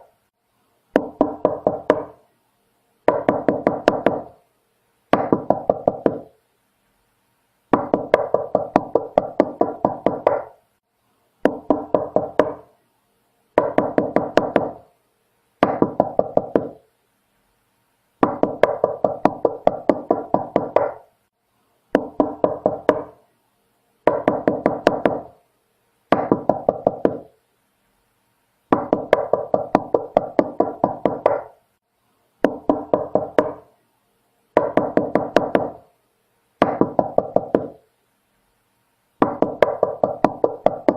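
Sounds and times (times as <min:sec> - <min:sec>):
rapid knocking on a door: 0:01.0 - 0:02.2, 0:03.1 - 0:04.4, 0:05.1 - 0:06.3, 0:07.7 - 0:10.5, 0:11.4 - 0:12.7, 0:13.6 - 0:14.8, 0:15.6 - 0:16.8, 0:18.2 - 0:21.0, 0:22.0 - 0:23.2, 0:24.1 - 0:25.3, 0:26.1 - 0:27.3, 0:28.7 - 0:31.6, 0:32.4 - 0:33.7, 0:34.6 - 0:35.8, 0:36.6 - 0:37.8, 0:39.2 - 0:40.9.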